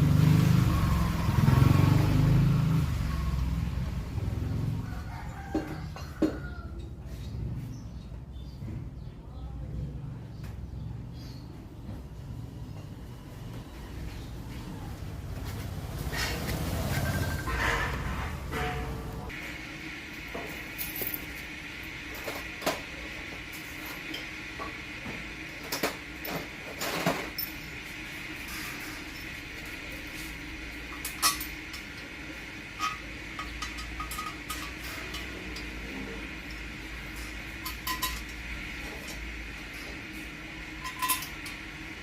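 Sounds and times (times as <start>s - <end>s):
steady background hum: 3.2s - 42.0s
metal tools clinking: 25.7s - 27.8s, 30.9s - 32.0s, 32.8s - 35.9s, 36.5s - 39.2s, 40.8s - 41.6s.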